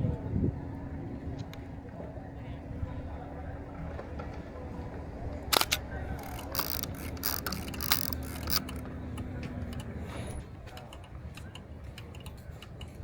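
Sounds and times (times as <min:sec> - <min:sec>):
camera clicking and ratcheting: 0:05.5 - 0:08.9.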